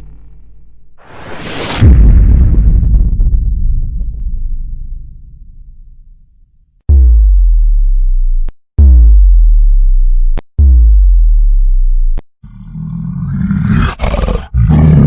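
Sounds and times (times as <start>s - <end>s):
rumble: 0.0s - 12.2s
synthesized deep bass hits: 1.8s - 12.2s.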